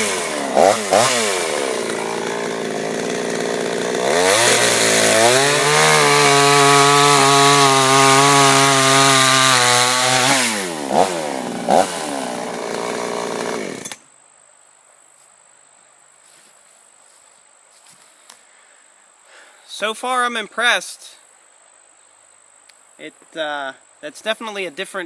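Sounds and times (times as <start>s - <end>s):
chainsaw cutting log: 0.0s - 14.0s.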